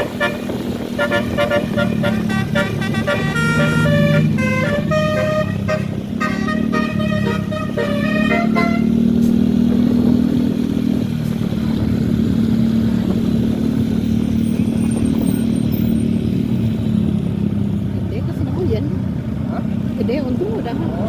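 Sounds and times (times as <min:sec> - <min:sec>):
multi-tone bus horn melody: 0:00.0 - 0:09.4
large bus engine running: 0:00.0 - 0:21.0.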